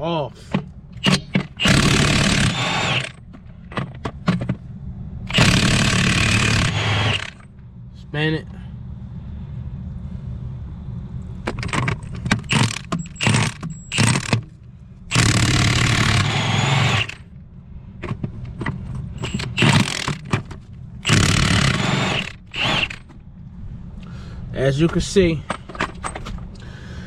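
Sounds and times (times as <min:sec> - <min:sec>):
low steady rumble: 0:00.0 - 0:27.0
impact wrench bursts: 0:00.5 - 0:04.5, 0:05.3 - 0:07.4, 0:11.5 - 0:14.5, 0:15.1 - 0:17.3, 0:19.2 - 0:23.1.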